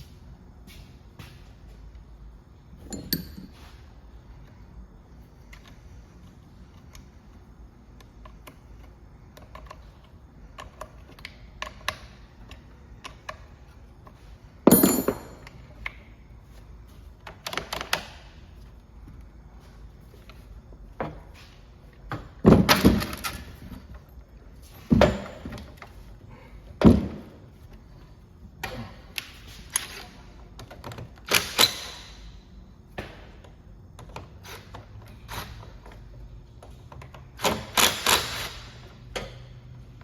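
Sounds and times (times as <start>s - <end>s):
metal tools clicking and knocking: 2.9s - 3.6s, 14.7s - 15.6s
ringing metallic clank: 2.9s - 3.6s.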